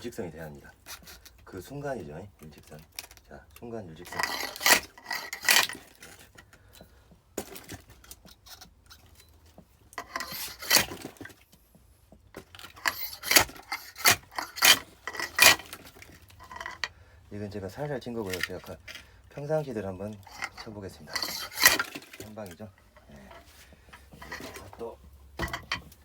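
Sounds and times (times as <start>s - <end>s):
axe splitting firewood: 4.0s - 6.6s, 7.3s - 8.8s, 10.0s - 11.4s, 12.3s - 16.9s, 17.8s - 19.1s, 19.7s - 26.0s.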